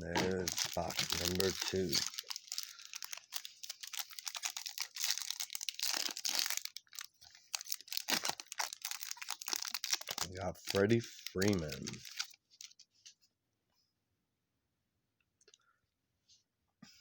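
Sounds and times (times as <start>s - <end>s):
card pack wrappers crinkling: 0.0s - 12.9s.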